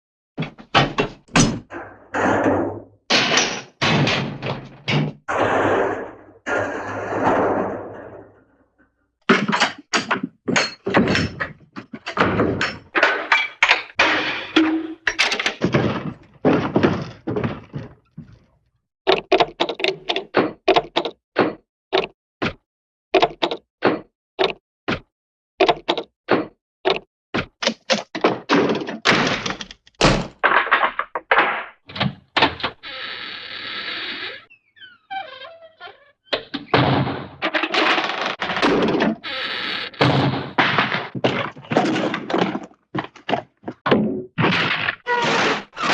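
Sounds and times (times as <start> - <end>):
cartoon door slams: 0.7 - 6.0, 23.2 - 32.9, 35.2 - 42.5
short door thunks and knocks: 3.1 - 5.3, 27.6 - 30.6.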